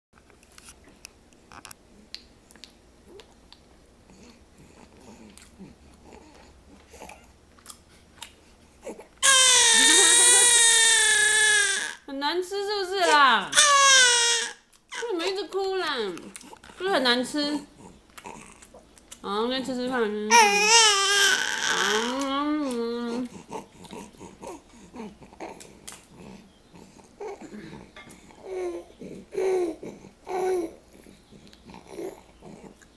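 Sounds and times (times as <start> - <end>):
baby crying: 8.8 - 12.0, 13.0 - 15.2, 20.3 - 22.3
baby vocal sounds: 8.8 - 12.0, 12.9 - 15.3, 20.3 - 32.8
infant whimpering: 8.8 - 12.0, 20.3 - 22.3, 23.0 - 32.7.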